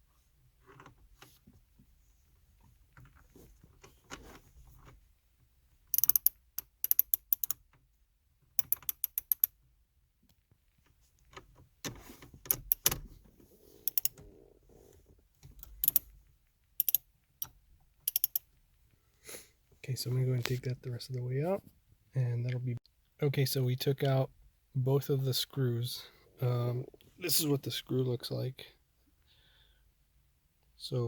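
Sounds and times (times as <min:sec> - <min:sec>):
hand ratchet clicking: 0:05.9 - 0:07.6, 0:08.6 - 0:09.5, 0:12.5 - 0:13.0, 0:13.9 - 0:14.2, 0:15.6 - 0:16.0, 0:16.8 - 0:17.0, 0:18.1 - 0:18.4.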